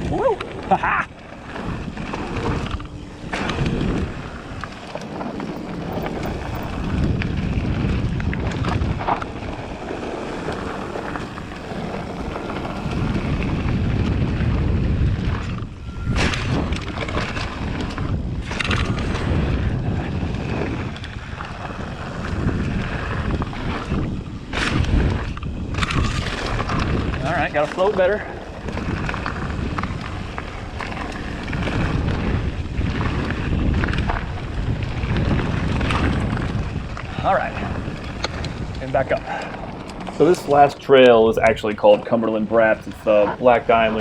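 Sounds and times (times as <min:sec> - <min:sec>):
tyres rushing on dirt: 0:00.0 - 0:14.8, 0:26.1 - 0:44.0
bike rattling: 0:00.0 - 0:44.0
wind buffeting microphone: 0:00.0 - 0:44.0.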